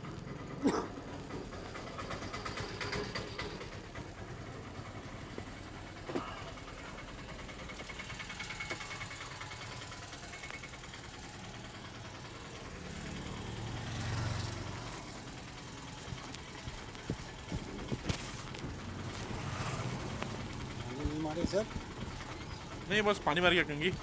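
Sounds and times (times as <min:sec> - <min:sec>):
vehicle engine passing: 0:12.5 - 0:24.0.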